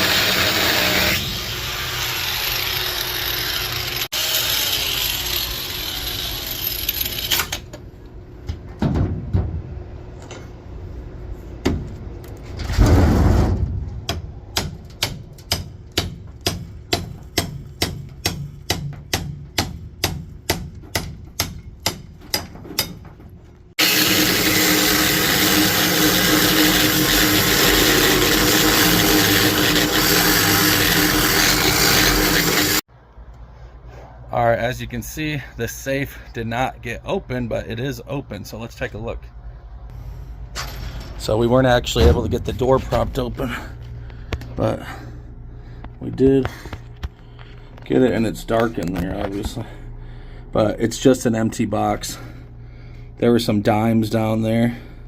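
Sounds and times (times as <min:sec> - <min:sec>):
power drill drilling metal: 0:00.0 - 0:07.6, 0:23.8 - 0:32.8.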